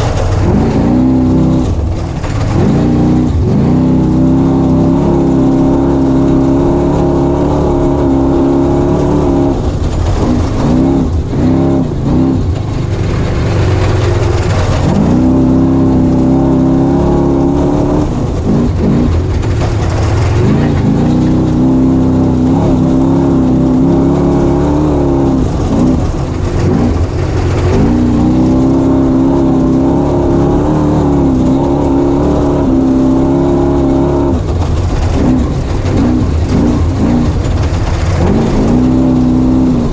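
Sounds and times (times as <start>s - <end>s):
race vehicle engine revving: 0.0s - 39.9s.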